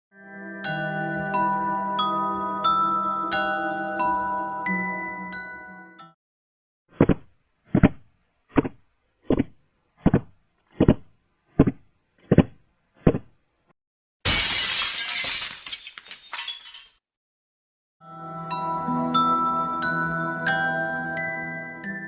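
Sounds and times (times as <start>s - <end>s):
glass shattering: 14.2s - 17.0s.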